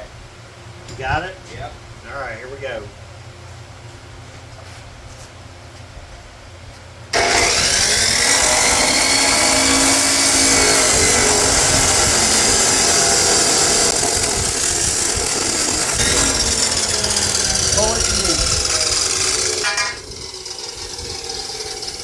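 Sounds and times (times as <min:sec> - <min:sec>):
cut-off saw cutting steel: 0:07.2 - 0:22.0.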